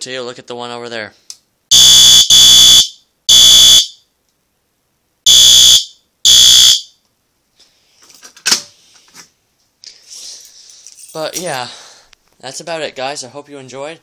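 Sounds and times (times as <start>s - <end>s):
fire alarm horn blasts: 1.7s - 4.0s, 5.3s - 7.0s.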